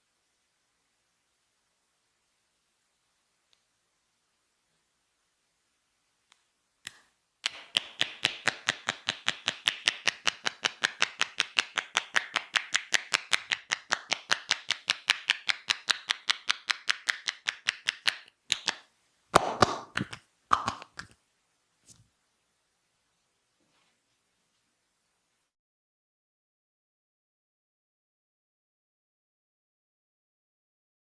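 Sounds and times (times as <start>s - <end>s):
hands slapping on body: 6.9s - 21.2s.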